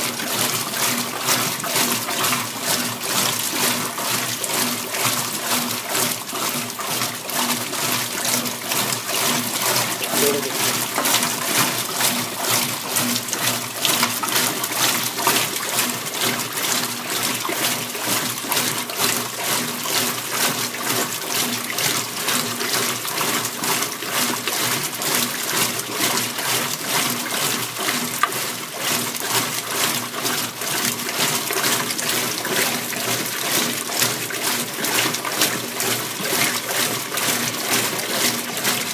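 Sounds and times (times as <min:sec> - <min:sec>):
water sloshing in washing machine: 0:00.0 - 0:38.9.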